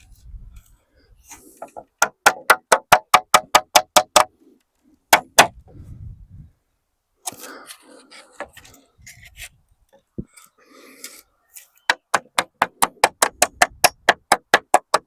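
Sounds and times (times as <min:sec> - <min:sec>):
wood rustling and scraping: 0:00.0 - 0:02.0, 0:07.3 - 0:12.0.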